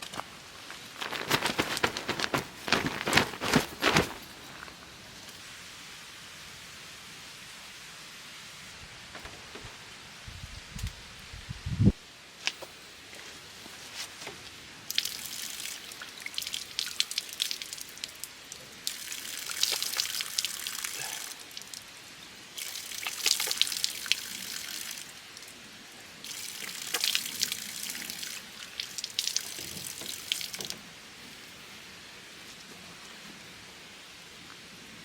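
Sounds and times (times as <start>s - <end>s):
water running and splashing: 14.8s - 30.9s.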